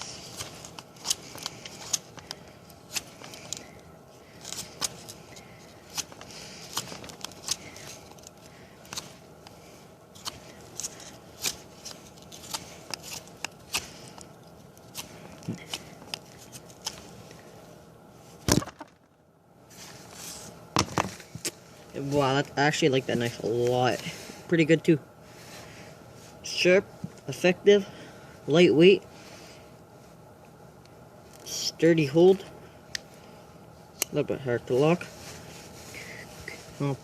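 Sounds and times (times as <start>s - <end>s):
knife scraping wood: 4.4s - 9.6s, 10.2s - 14.3s
sharp wood crack: 18.5s - 19.0s.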